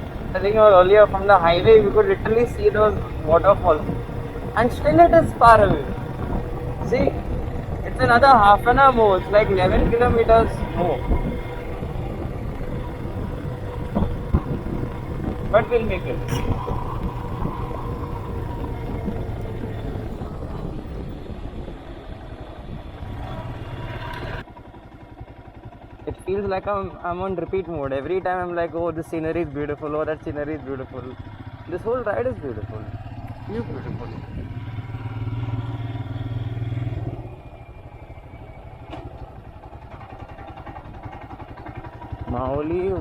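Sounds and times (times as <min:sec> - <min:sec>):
wind noise on microphone: 0:00.0 - 0:24.4, 0:33.5 - 0:35.7
motorcycle engine running: 0:00.0 - 0:43.0.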